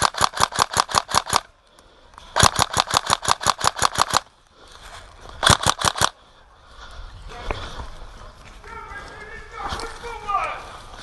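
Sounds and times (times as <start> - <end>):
airsoft gun firing full auto: 0.0 - 1.5, 2.4 - 4.3, 5.4 - 6.1.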